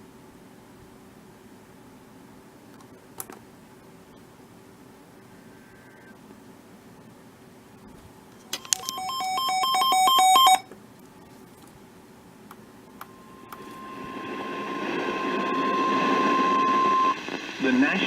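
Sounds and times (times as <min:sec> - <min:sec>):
single-pitch alarm tone: 0:08.6 - 0:10.6, 0:13.0 - 0:17.2
two-pitch electronic warble: 0:13.0 - 0:17.2.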